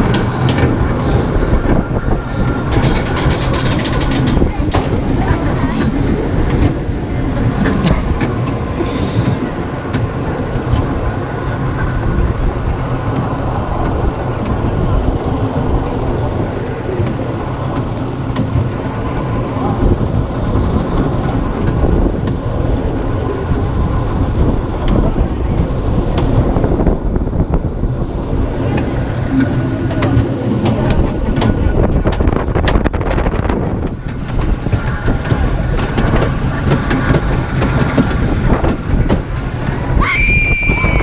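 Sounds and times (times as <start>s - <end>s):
coaster wheels rumbling on track: 0.0s - 41.0s
rushing wind: 0.0s - 41.0s
high squeal: 40.0s - 41.0s.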